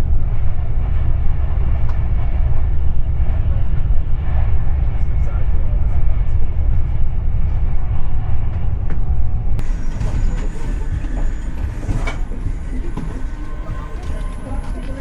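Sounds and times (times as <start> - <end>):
train rumbling inside carriage: 0.0 - 15.0.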